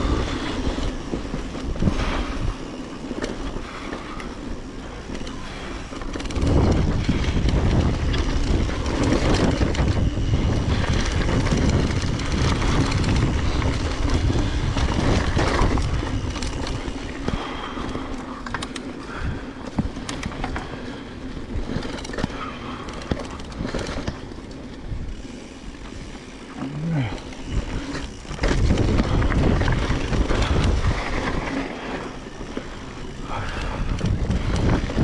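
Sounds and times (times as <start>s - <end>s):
bike clattering over bumps: 0.0s - 35.0s
bike tyres on dirt: 0.0s - 35.0s
wind on microphone: 5.5s - 17.7s, 27.0s - 32.1s, 33.2s - 35.0s.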